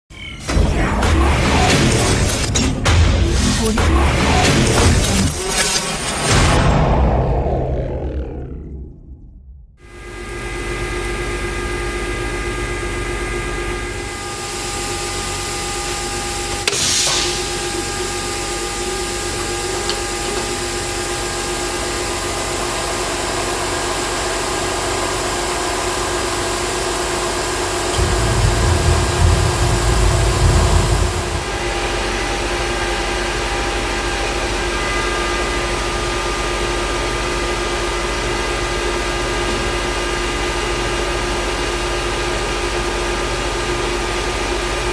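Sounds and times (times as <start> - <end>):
heavy low rumble: 6.1 - 9.8, 27.9 - 32.8
cnc router machine whine: 9.8 - 44.9.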